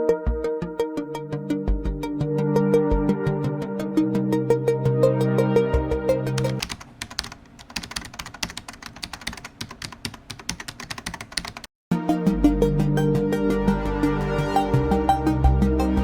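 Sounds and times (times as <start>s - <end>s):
electronic music: 0.0s - 6.6s, 12.0s - 16.0s.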